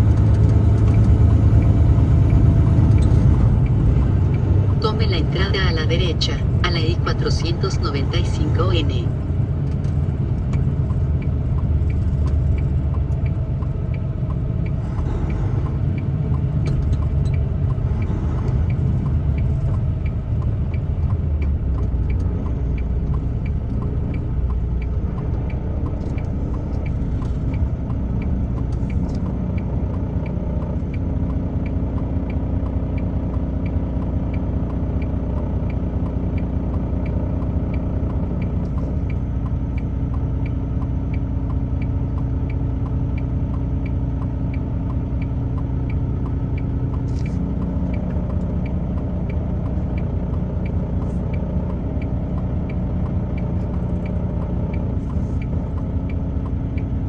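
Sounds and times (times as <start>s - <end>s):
truck engine and road rumble: 0.0s - 57.0s.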